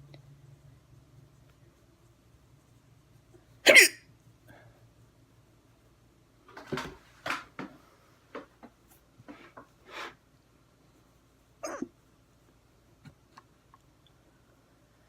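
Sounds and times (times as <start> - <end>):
person hiccuping: 3.7 - 4.0, 11.6 - 11.9.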